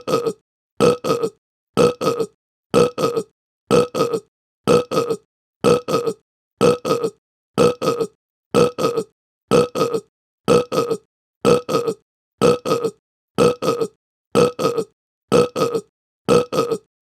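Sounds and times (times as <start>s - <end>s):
person burping: 0.0s - 16.9s.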